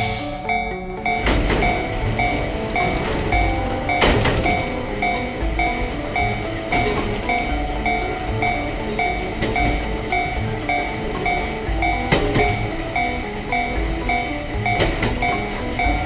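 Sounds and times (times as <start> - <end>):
passing train rumble: 0.0 - 16.0
railway crossing bell ringing: 0.0 - 16.0
sharp knocks: 1.1 - 16.0.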